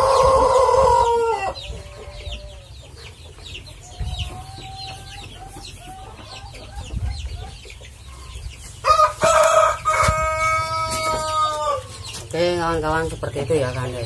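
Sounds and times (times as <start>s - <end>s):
chickens clucking: 0.0s - 14.0s
rooster crowing: 8.8s - 11.9s.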